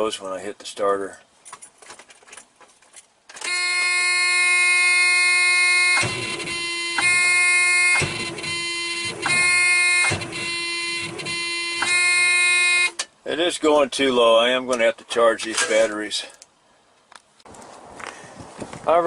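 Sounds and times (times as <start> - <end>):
warning buzzer steady tone: 3.5 - 13.0
engine starter cranking roughly: 6.0 - 12.0.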